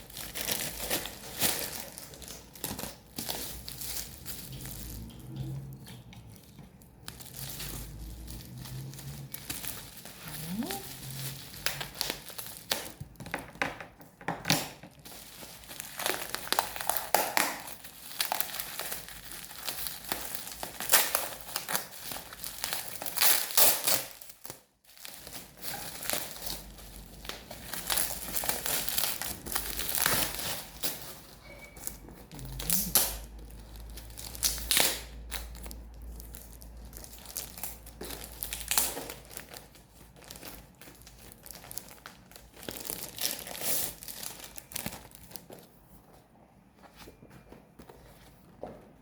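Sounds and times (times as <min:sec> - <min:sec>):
packaging crinkling and rustling: 0:00.0 - 0:48.9.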